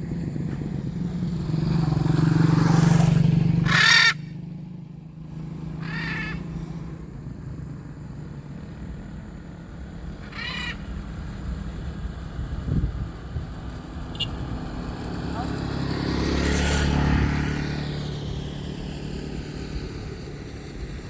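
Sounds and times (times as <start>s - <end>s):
low engine hum: 0.0s - 21.0s
macaw squawking: 3.6s - 4.3s, 5.8s - 6.5s, 10.2s - 11.0s, 14.1s - 14.4s.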